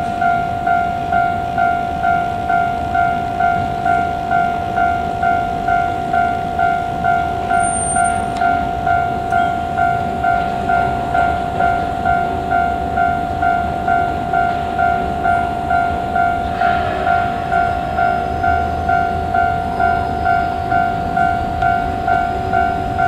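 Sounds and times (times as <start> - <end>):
level crossing warning bell: 0.0 - 23.0
train rumbling: 0.0 - 23.0.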